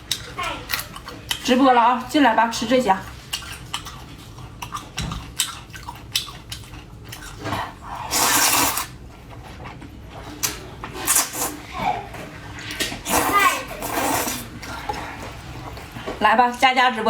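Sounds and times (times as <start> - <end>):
wet chewing smacks: 3.1 - 8.5
hissing noodle slurp: 7.9 - 9.0, 11.0 - 11.7, 12.9 - 15.2.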